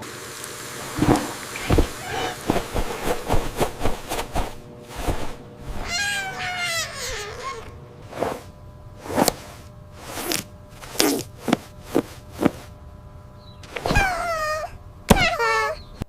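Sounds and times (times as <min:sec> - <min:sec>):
high wavering crying voice: 0:05.8 - 0:07.8, 0:13.9 - 0:15.9.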